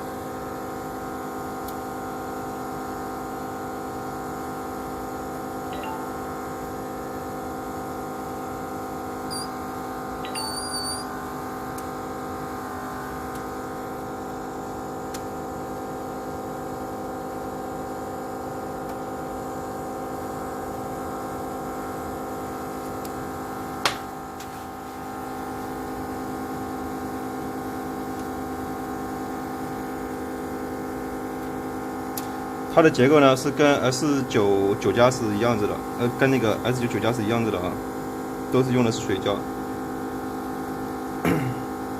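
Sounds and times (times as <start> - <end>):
machine electrical hum: 0.0 - 41.9
faint high chirps: 5.8 - 6.3, 9.3 - 9.5, 10.2 - 11.1.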